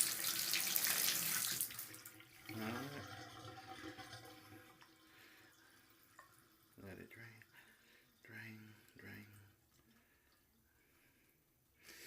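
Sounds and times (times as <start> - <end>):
water running from faucet: 0.0 - 6.8
faint drain dribble: 0.0 - 11.3.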